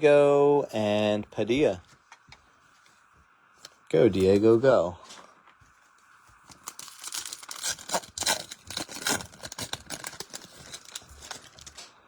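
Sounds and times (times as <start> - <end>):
foil wrapper tearing and crinkling: 6.4 - 12.0.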